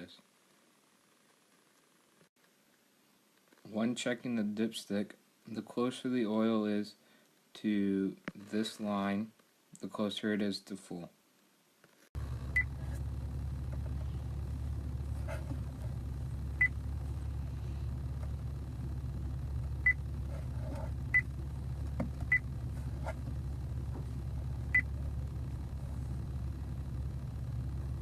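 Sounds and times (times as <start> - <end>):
car engine idling: 12.2 - 28.0.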